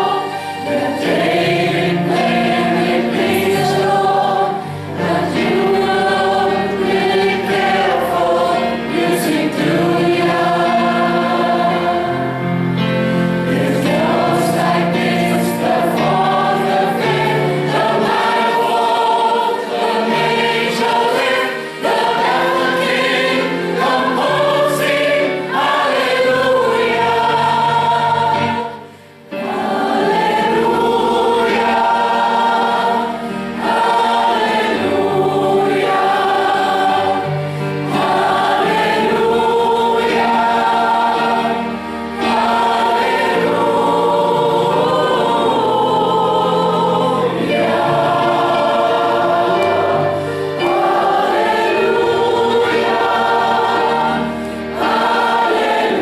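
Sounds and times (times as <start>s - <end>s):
choir singing a hymn: 0.0s - 56.0s.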